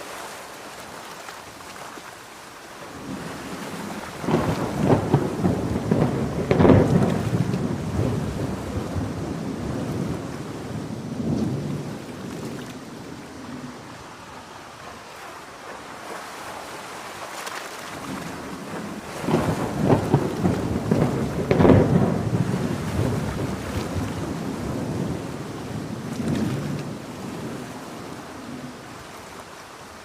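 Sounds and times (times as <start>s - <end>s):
heavy rain: 0.0s - 30.0s
rolling thunder: 3.1s - 14.0s, 18.1s - 28.8s.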